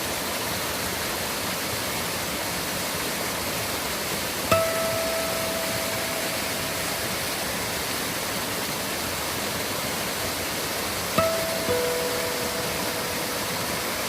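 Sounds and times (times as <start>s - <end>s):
stream water rushing: 0.0s - 14.0s
ringing musical note: 4.5s - 7.8s, 11.2s - 14.0s.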